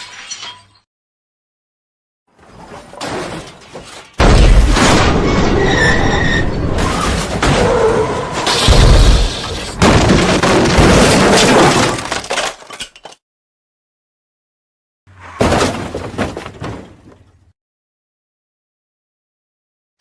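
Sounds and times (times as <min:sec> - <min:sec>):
glass shattering: 0:00.0 - 0:00.9.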